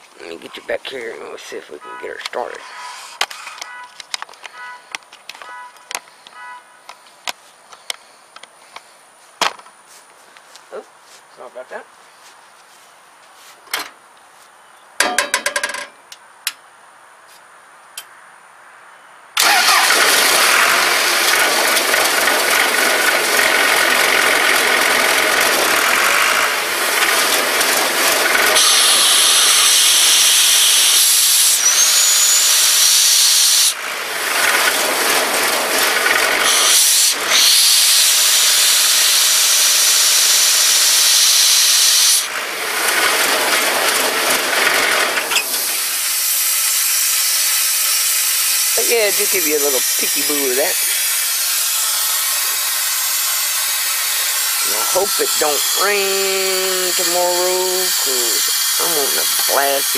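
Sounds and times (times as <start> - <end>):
diesel engine starting and running: 19.4 - 59.9.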